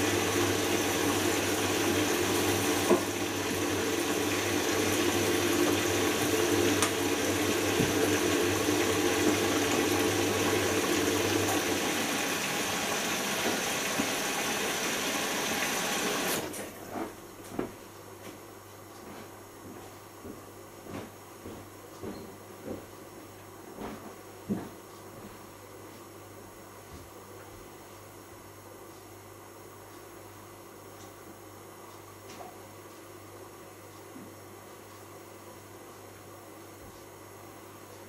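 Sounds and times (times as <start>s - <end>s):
washing machine filling with water: 0.0s - 16.9s.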